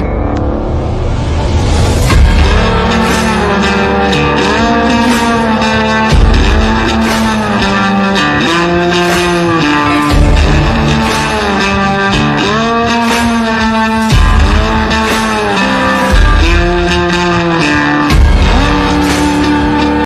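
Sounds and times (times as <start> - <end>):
heavy bass hits: 0.0 - 5.3, 6.1 - 7.6, 18.1 - 19.4
instrumental rock music: 0.0 - 20.0
pitch-bending guitar: 0.0 - 20.0.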